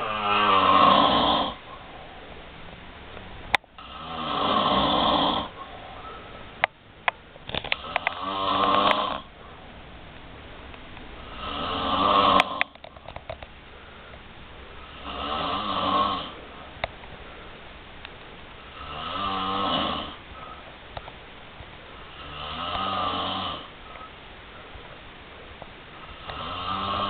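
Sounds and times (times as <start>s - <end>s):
person snoring: 0.0s - 1.6s, 3.8s - 5.8s, 7.8s - 9.3s, 11.3s - 12.8s, 14.8s - 16.4s, 18.7s - 20.6s, 22.1s - 23.7s, 26.1s - 27.0s.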